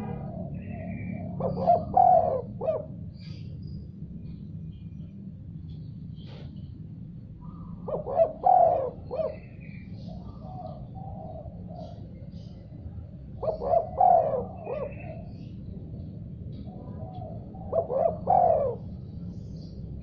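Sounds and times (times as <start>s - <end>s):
dove cooing: 0.0s - 3.5s, 7.4s - 12.6s, 13.2s - 19.8s
steady low hum: 0.0s - 20.0s.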